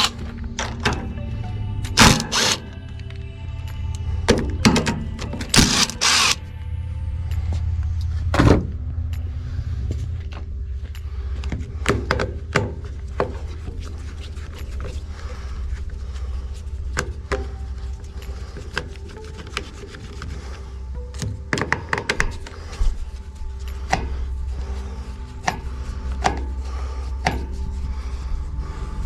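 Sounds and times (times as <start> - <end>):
hand tools clicking on metal: 0.0 - 0.9, 2.0 - 2.6, 5.2 - 6.4
steady low hum: 0.0 - 29.0.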